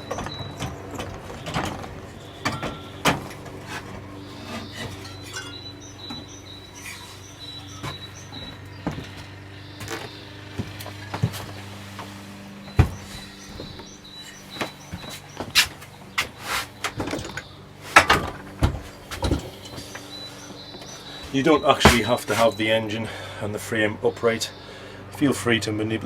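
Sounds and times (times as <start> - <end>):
metal clinks and knocks: 4.5 - 6.9.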